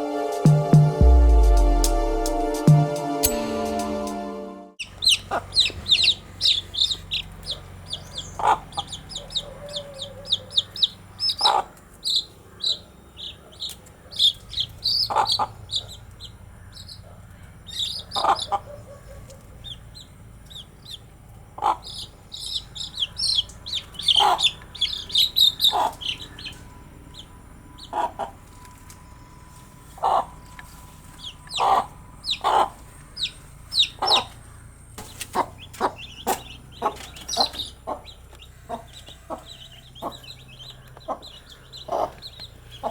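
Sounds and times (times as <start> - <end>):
baby chicks peeping: 4.8 - 42.9
hen clucking: 4.8 - 42.9.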